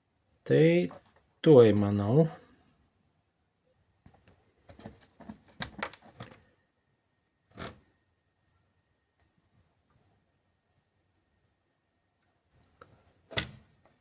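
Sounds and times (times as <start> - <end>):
plastic case clicks and rattles: 4.7 - 6.4.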